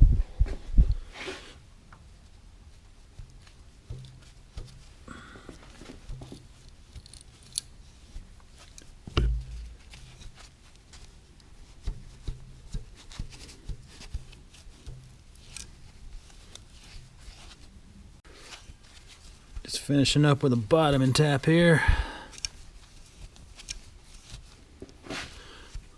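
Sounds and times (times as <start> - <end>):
loud thump: 9.1 - 10.0.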